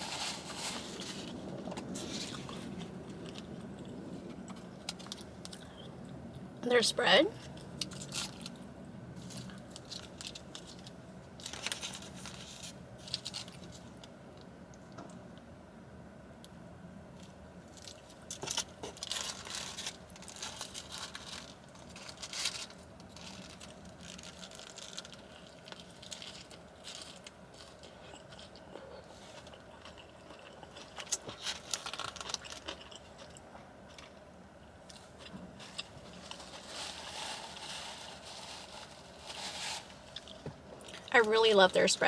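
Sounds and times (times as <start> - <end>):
person chewing a burger: 0.0 - 6.3, 17.7 - 38.3.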